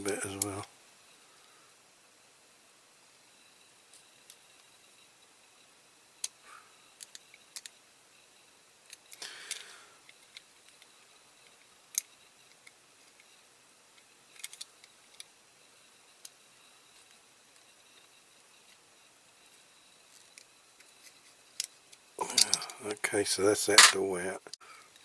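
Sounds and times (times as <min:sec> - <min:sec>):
small clicks on toy car metal: 0:06.2 - 0:06.4, 0:07.0 - 0:07.8, 0:08.9 - 0:13.3, 0:14.0 - 0:15.3, 0:20.2 - 0:22.9.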